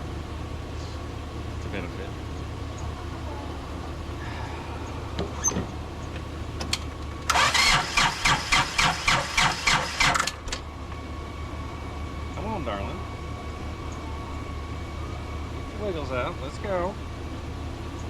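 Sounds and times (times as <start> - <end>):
low steady hum: 0.0 - 7.9, 10.3 - 18.0
tractor engine cranking: 5.2 - 10.7.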